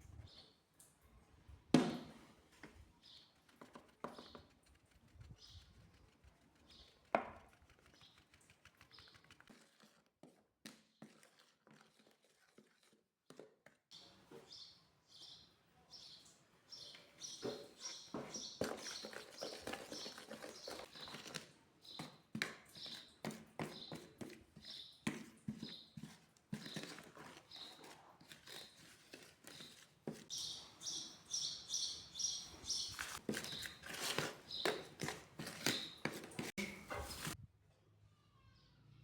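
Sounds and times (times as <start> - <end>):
small bird chirping: 4.1 - 9.3, 13.9 - 21.2, 30.3 - 33.8.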